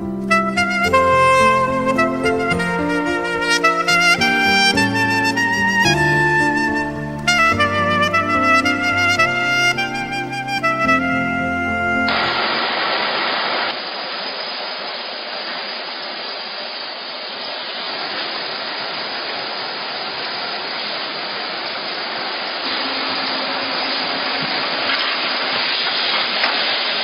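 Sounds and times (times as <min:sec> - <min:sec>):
hot-air blower rushing: 0:22.6 - 0:26.3.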